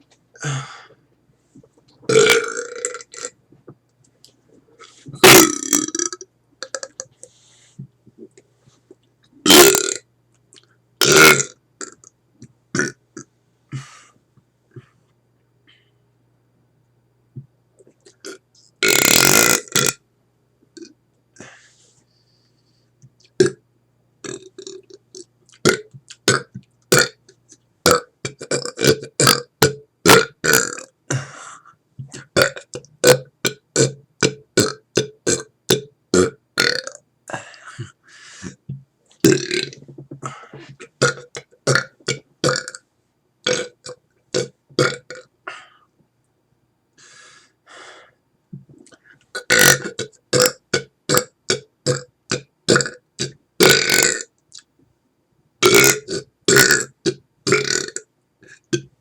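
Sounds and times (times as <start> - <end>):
man air-burping: 0.3 - 1.0, 2.0 - 3.3, 4.8 - 7.3, 9.4 - 10.0, 30.1 - 34.0, 36.1 - 42.8, 43.5 - 45.9.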